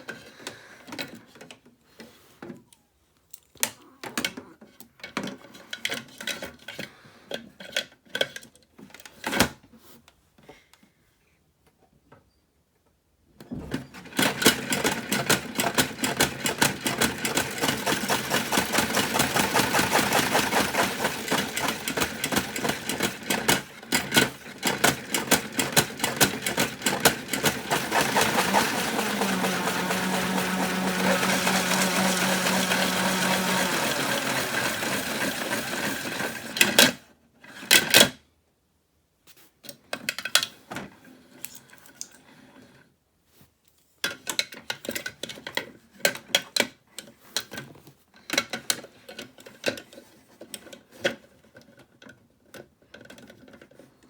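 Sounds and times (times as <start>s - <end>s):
toy washing machine clattering: 14.0s - 37.0s
small motor hum: 27.4s - 36.6s.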